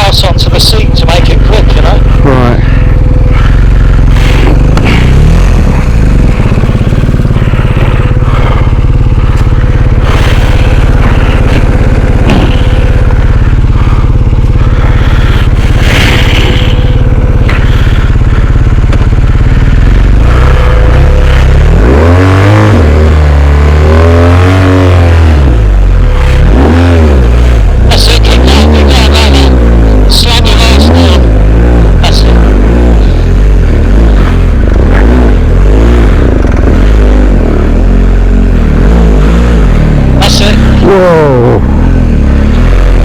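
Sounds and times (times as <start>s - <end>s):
motorcycle engine revving: 0.0s - 43.0s.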